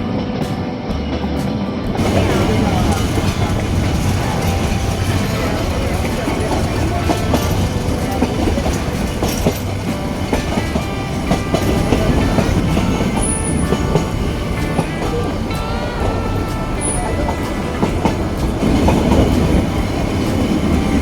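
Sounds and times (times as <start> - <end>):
train wheels clattering over rails: 2.0 - 21.0.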